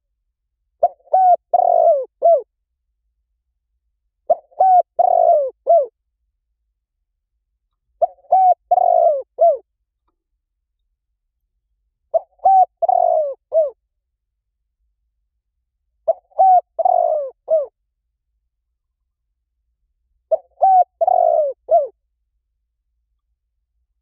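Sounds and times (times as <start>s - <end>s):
dove cooing: 0.8s - 2.5s, 4.3s - 5.9s, 8.0s - 9.6s, 12.1s - 13.8s, 16.0s - 17.7s, 20.3s - 22.0s.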